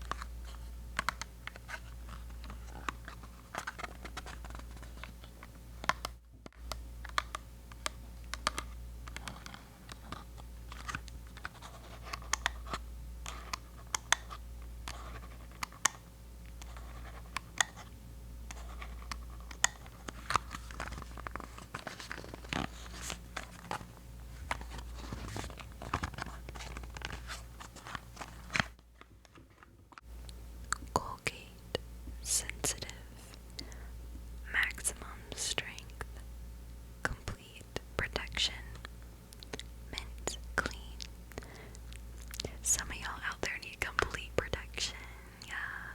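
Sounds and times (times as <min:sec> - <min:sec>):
packaging crinkles: 0:18.7 - 0:30.0.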